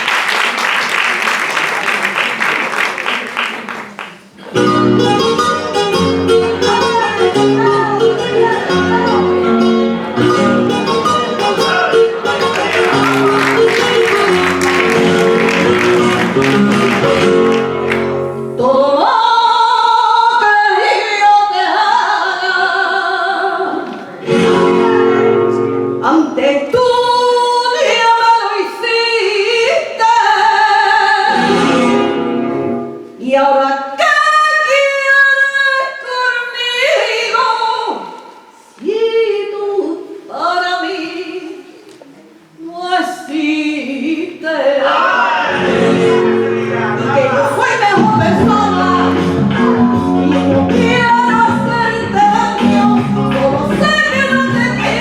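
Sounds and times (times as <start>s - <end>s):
instrumental accompaniment: 4.4s - 18.7s, 45.4s - 55.0s
woman singing with vibrato: 6.4s - 9.5s, 18.6s - 25.3s, 26.0s - 31.9s, 33.2s - 41.8s, 42.5s - 45.1s, 47.0s - 55.0s.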